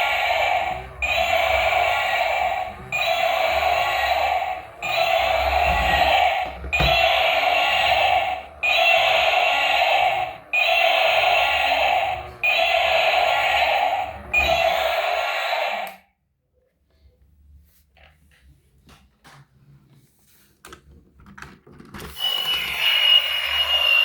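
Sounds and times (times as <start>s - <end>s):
toy electronic sound effect: 0.0s - 16.0s, 22.1s - 24.0s.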